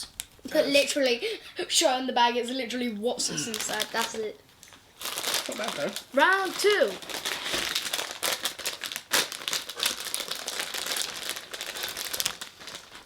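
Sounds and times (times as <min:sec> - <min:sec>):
plastic packaging crinkling: 0:03.3 - 0:13.0.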